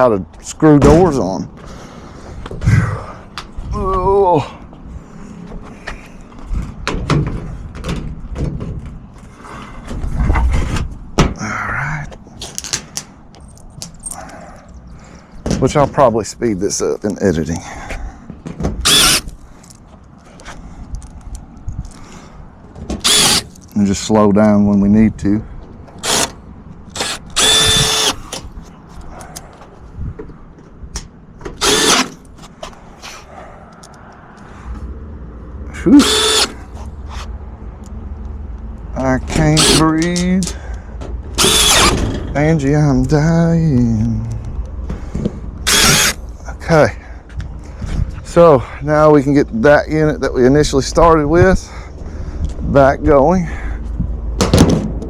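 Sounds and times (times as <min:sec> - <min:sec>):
power drill driving screws into metal: 0:18.8 - 0:19.3, 0:23.0 - 0:23.6, 0:26.0 - 0:28.3, 0:31.6 - 0:32.2, 0:36.0 - 0:36.6, 0:39.6 - 0:39.9, 0:41.4 - 0:42.2, 0:45.6 - 0:46.2.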